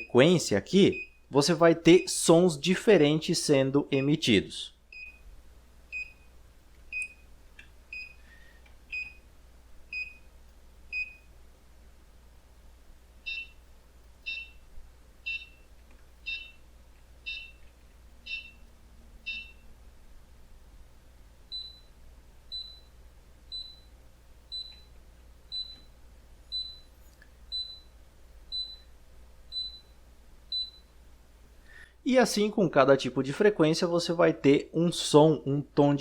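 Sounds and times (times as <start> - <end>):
electronic buzzer beeps: 13.2 - 13.6, 14.3 - 14.6, 15.3 - 15.7, 16.3 - 16.6, 17.3 - 17.6, 18.3 - 18.6, 19.2 - 19.6, 21.5 - 21.9, 22.5 - 22.9, 23.5 - 23.9, 24.5 - 24.9, 25.5 - 25.9, 26.5 - 26.9.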